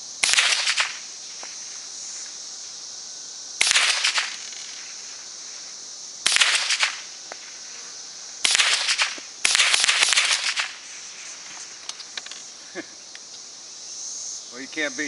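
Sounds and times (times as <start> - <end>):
insects droning: 0.0 - 15.0
rifle shots with echo: 0.2 - 1.0, 3.6 - 4.4, 6.2 - 7.0, 8.4 - 10.8.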